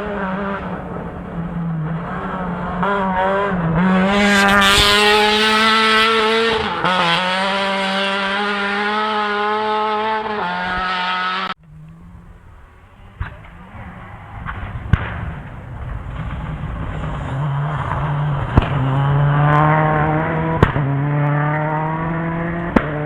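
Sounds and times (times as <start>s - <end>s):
rally car engine revving: 0.0s - 23.0s.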